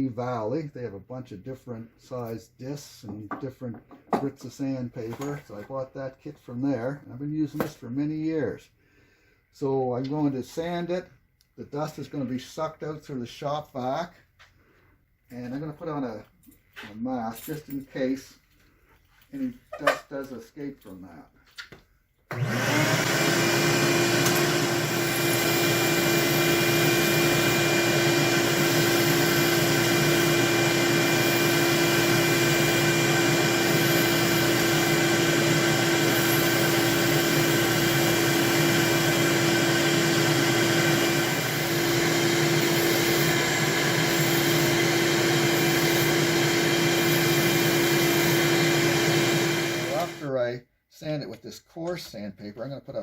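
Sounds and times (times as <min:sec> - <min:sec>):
shop vac rushing hum: 0:22.3 - 0:50.3
sanding drum whining: 0:22.4 - 0:50.2.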